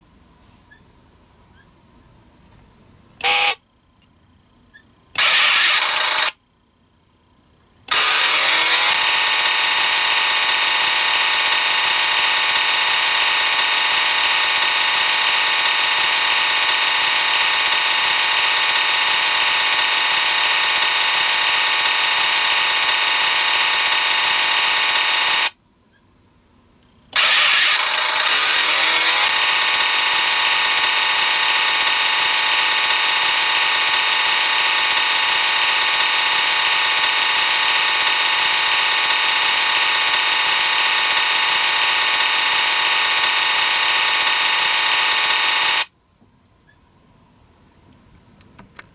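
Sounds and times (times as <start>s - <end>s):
electronic car sound effect: 5.2s - 6.4s, 27.2s - 45.8s.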